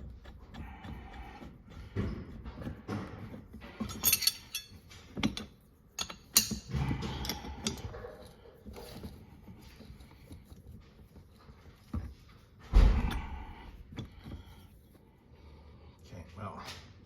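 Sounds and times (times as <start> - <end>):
scraping and handling noise: 0.0 - 17.0
metal tools clinking: 3.2 - 9.1.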